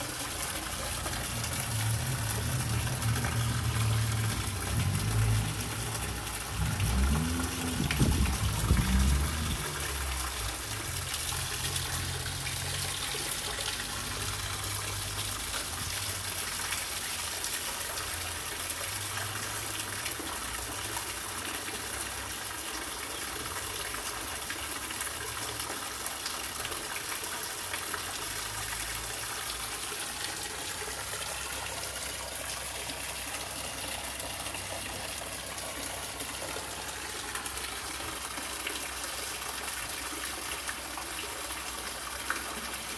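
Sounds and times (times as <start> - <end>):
water pouring into a container: 0.0 - 42.9.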